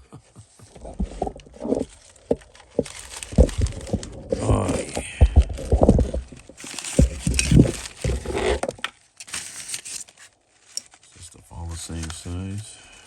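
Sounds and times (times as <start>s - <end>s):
hands rummaging small plastic bits: 0.9s - 11.0s.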